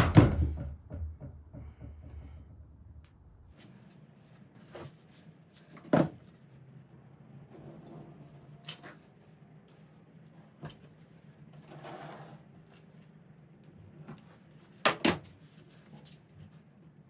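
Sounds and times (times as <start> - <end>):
sharp knock: 0.0 - 3.2
low steady hum: 0.0 - 3.9.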